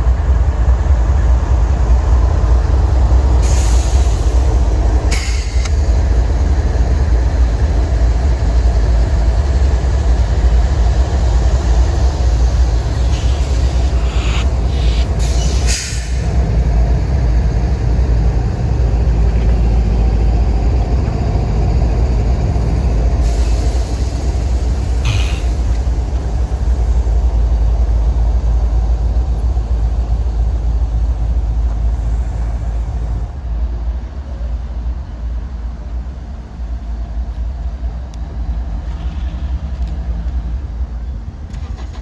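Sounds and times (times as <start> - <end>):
train cars rumbling past: 0.0 - 42.0
hissing bursts: 12.2 - 16.3.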